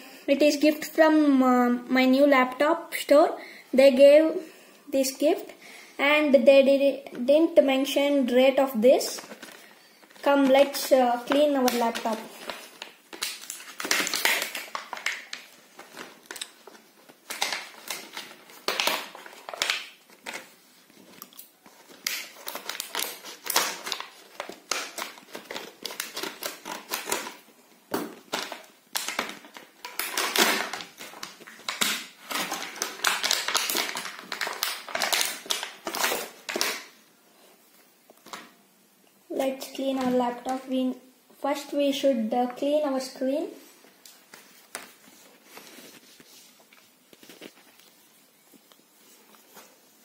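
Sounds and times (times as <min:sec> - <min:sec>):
plastic rustling: 0:08.8 - 0:38.6, 0:43.6 - 0:50.0.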